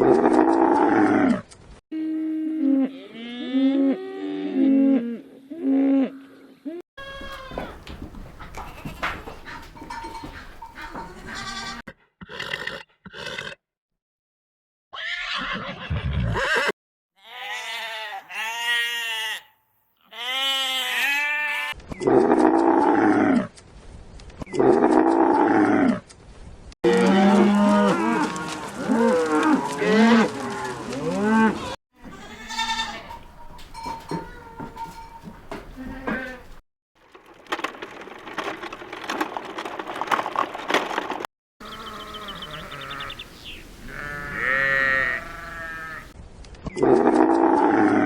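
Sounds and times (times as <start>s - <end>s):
farm animals calling: 7.0s - 13.4s, 26.9s - 36.6s, 41.6s - 46.2s.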